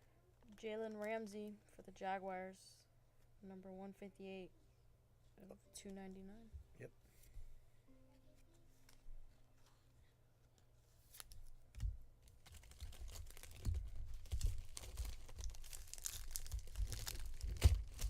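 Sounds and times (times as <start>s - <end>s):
card pack wrapper tearing: 12.3s - 18.0s.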